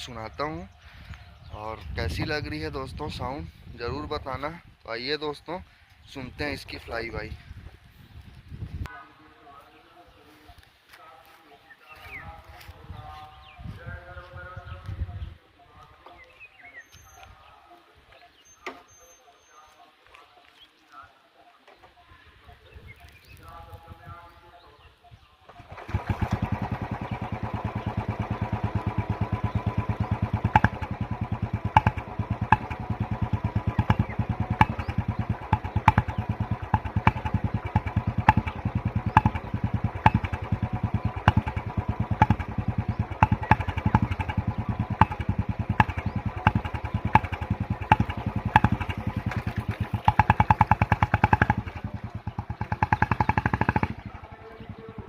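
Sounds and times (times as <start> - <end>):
exhaust cracks: 25.6 - 55.0
motorcycle engine exhaust beat: 25.8 - 55.0.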